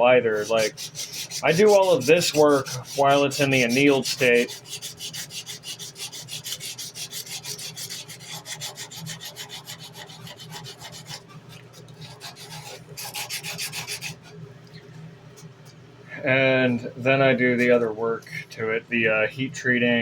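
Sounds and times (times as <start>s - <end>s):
sandpaper rubbing on steel blade: 0.3s - 14.3s.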